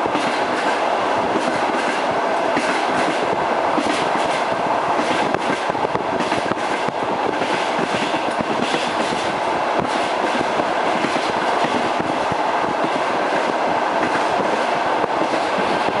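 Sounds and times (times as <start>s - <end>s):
train wheels clattering: 0.0s - 16.0s.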